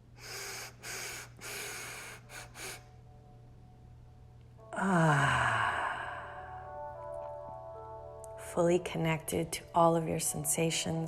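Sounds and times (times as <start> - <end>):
woman breathing: 0.2 - 3.0, 4.8 - 6.9
woman sighing: 4.7 - 6.7.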